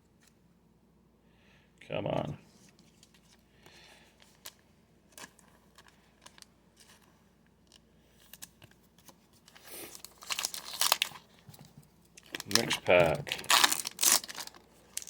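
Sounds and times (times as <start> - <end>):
foil wrapper tearing open: 9.6 - 11.2, 12.2 - 15.0.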